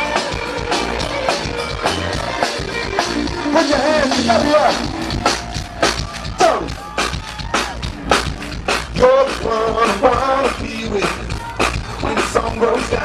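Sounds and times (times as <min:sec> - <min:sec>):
person singing: 0:00.0 - 0:05.4, 0:08.7 - 0:13.0
live band drum beat: 0:00.0 - 0:13.0.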